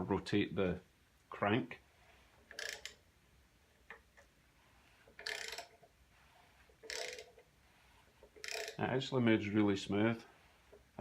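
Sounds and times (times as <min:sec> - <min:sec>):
wrench ratcheting clicks: 0:02.5 - 0:03.0, 0:05.2 - 0:05.8, 0:06.8 - 0:07.4, 0:08.3 - 0:08.8.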